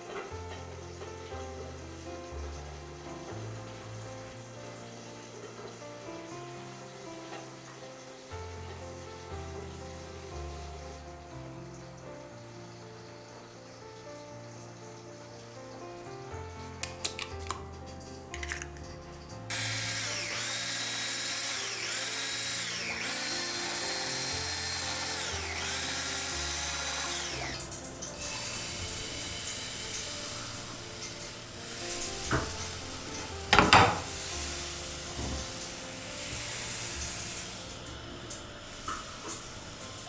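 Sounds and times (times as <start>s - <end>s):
sewing machine motor: 19.5s - 31.4s, 32.2s - 40.0s.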